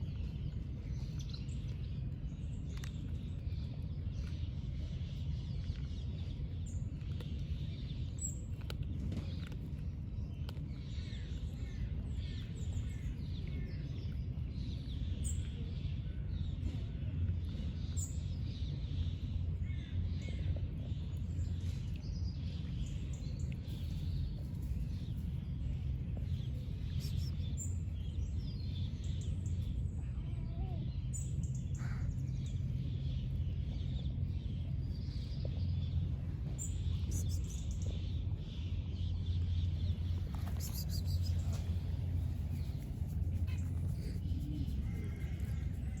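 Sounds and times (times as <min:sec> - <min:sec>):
steady low rumble: 0:00.0 - 0:46.0
small birds chirping: 0:20.9 - 0:46.0.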